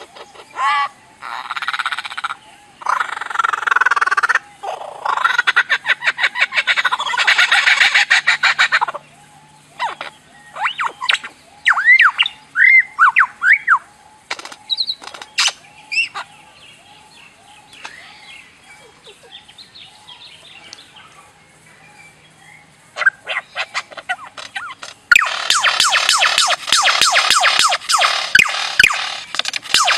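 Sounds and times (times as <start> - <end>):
bird rapid pulsed chatter: 0.0 - 29.9
sharp bird calls: 0.0 - 29.9
bird whistled notes: 9.8 - 13.8, 24.6 - 29.9.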